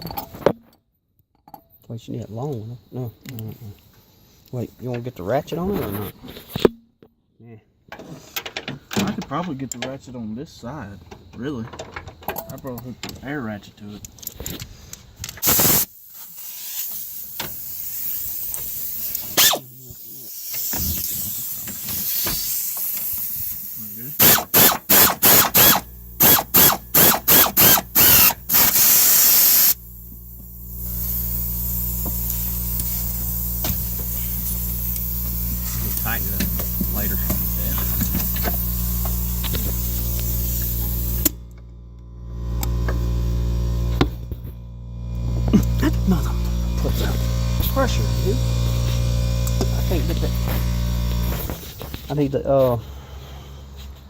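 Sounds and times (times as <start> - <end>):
compressed air hissing: 14.7 - 41.4, 45.4 - 54.0
compressed air blast: 15.4 - 41.4.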